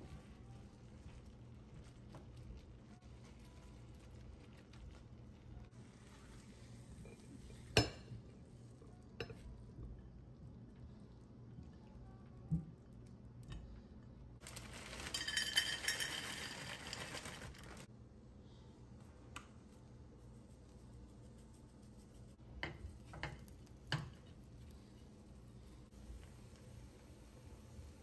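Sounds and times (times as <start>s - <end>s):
utensils and dishes clinking: 14.4s - 17.8s.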